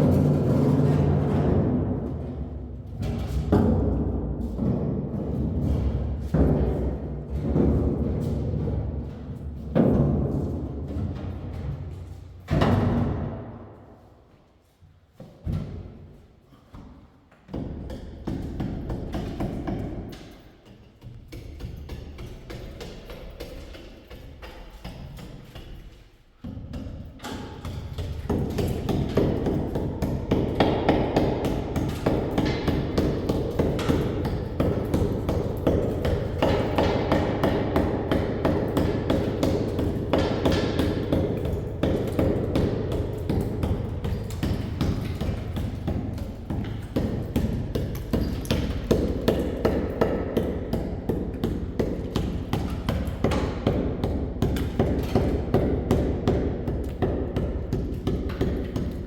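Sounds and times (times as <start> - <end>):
rapid thumps and taps: 21.0 - 59.0.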